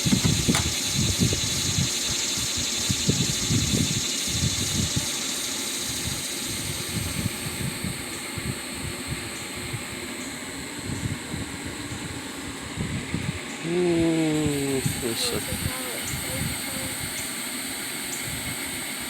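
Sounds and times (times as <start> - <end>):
bees buzzing: 13.4 - 18.7.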